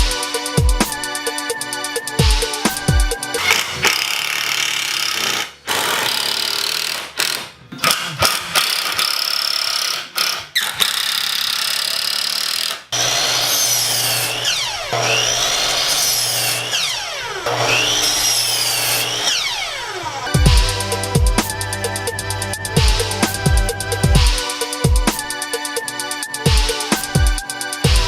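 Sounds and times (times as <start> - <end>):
background music: 0.0 - 4.0, 20.2 - 28.0
power tool cutting lumber: 3.3 - 22.0
gliding whines: 13.0 - 27.9.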